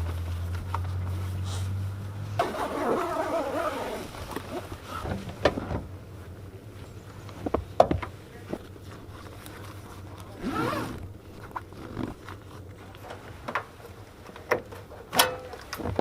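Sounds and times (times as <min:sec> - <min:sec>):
gear scraping: 0:02.4 - 0:05.0, 0:08.8 - 0:12.7.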